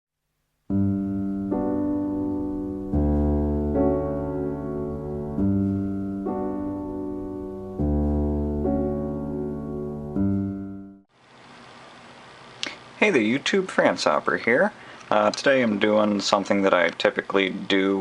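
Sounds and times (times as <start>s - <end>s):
deep bass: 0.7s - 11.0s
slow piano chords: 0.7s - 11.1s.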